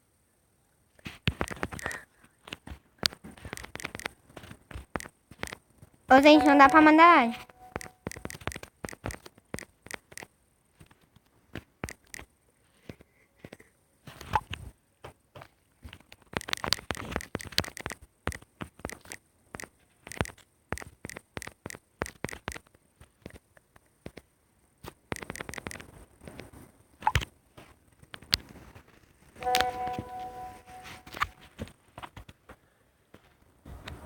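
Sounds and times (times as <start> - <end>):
fingers tapping on smartphone: 1.3 - 5.6, 6.2 - 10.3, 11.8 - 12.3, 16.3 - 24.3, 25.1 - 26.0.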